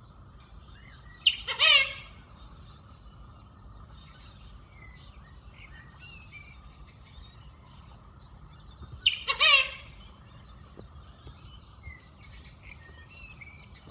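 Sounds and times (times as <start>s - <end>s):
small birds chirping: 0.0s - 13.9s
bird harsh call: 1.2s - 2.5s, 9.0s - 10.3s.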